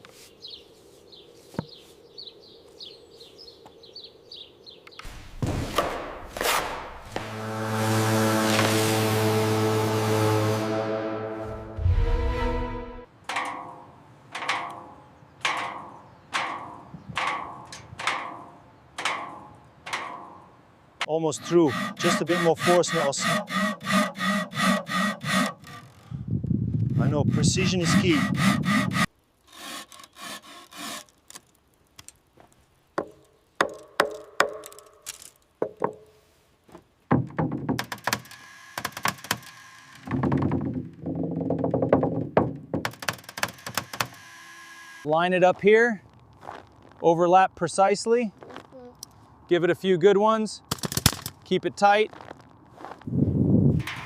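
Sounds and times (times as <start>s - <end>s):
music: 9.6s - 13.1s
rubbing strokes on wood: 21.4s - 25.8s, 27.0s - 31.0s
hammer striking wood: 33.0s - 34.8s, 35.6s - 36.0s, 37.1s - 39.4s, 40.0s - 44.2s
sharp knocks on wood: 35.6s - 36.0s, 36.7s - 39.4s, 40.1s - 44.1s.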